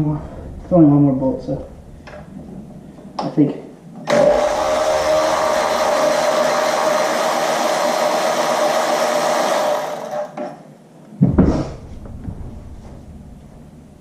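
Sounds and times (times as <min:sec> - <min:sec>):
loud low thump: 0:00.0 - 0:03.4, 0:11.2 - 0:14.0
power tool motor whirring: 0:04.1 - 0:10.3.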